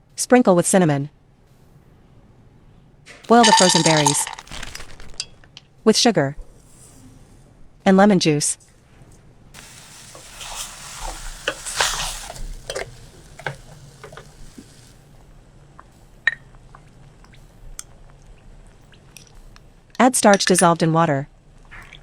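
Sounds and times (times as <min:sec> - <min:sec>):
hissing rush of cooking berries: 0:03.3 - 0:05.4, 0:09.6 - 0:15.1.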